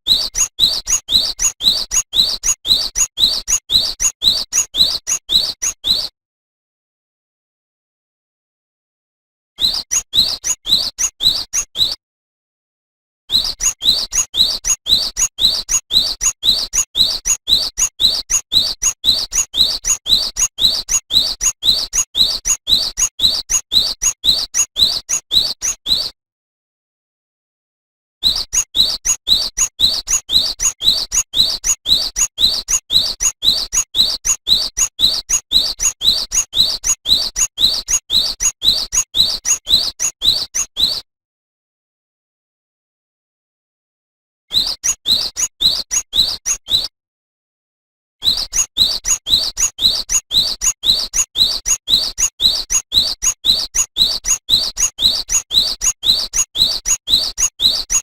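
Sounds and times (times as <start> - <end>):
bird singing high rising notes: 0.1 - 6.1, 20.6 - 26.2, 28.2 - 41.0.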